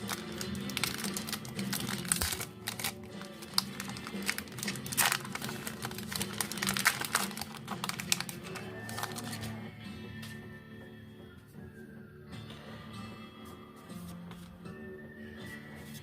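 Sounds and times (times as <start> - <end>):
plastic wrapper crinkling: 0.0 - 9.5
background music: 0.0 - 16.0.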